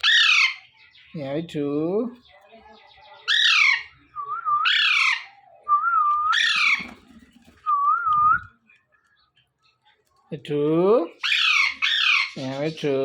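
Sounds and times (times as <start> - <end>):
parrot calling: 0.0 - 0.7, 3.2 - 4.0, 4.6 - 5.3, 6.3 - 6.9, 11.2 - 12.5.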